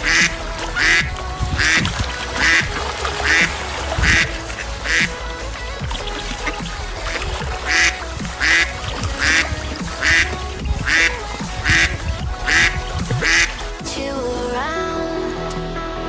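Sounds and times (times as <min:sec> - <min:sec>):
duck quacking: 0:00.0 - 0:05.2, 0:06.0 - 0:13.7
background music: 0:00.0 - 0:16.0.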